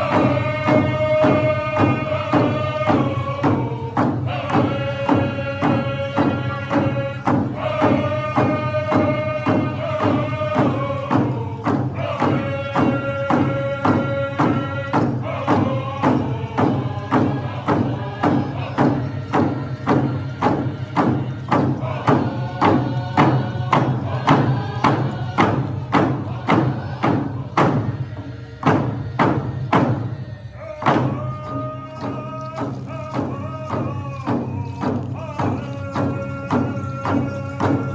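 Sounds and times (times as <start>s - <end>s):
group singing chant-like phrases: 0.0s - 37.9s
large drum steady beat: 0.0s - 37.9s.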